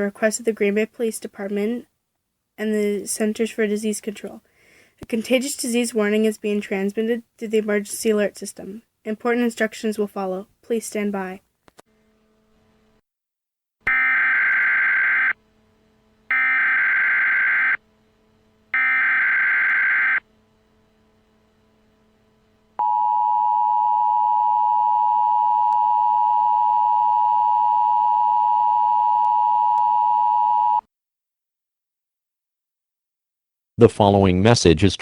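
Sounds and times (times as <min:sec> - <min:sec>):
two-tone attention signal: 0:16.3 - 0:17.8, 0:18.8 - 0:20.2, 0:22.8 - 0:30.8.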